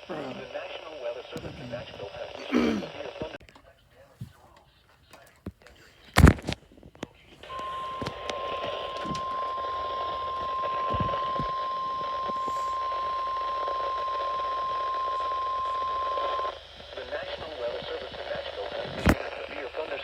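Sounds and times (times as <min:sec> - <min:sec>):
radio hiss: 0:00.0 - 0:20.0
clicks: 0:04.6 - 0:16.6
steady warning alarm tone: 0:07.4 - 0:17.7.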